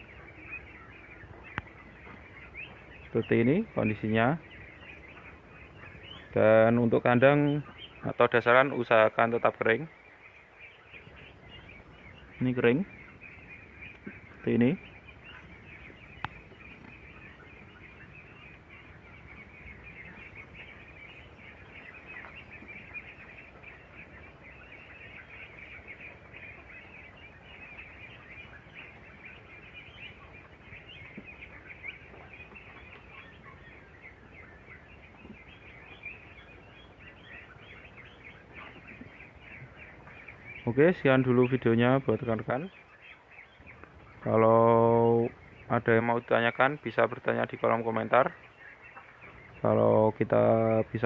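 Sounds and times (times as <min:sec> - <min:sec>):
ducklings peeping: 0:00.0 - 0:51.0.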